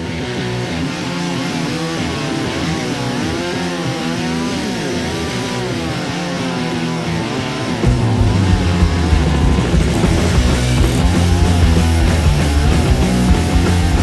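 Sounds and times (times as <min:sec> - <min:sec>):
chainsaw engine revving: 0:07.8 - 0:14.0.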